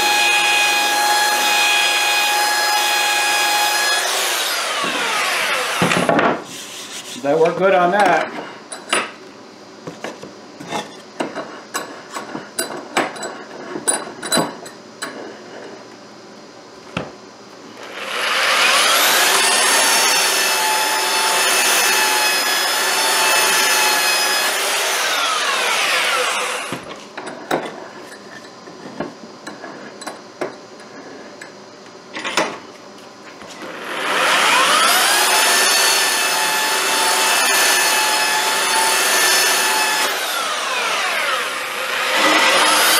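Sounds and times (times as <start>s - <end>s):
power tool motor whining: 0.0s - 6.2s, 17.8s - 26.9s, 33.6s - 42.9s
clicks and knocks of tools and wood: 26.7s - 33.6s.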